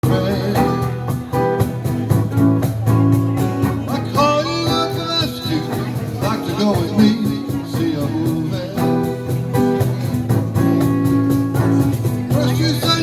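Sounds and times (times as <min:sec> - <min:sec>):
guitar with bending notes: 0:00.0 - 0:13.0
live band playing: 0:00.0 - 0:13.0.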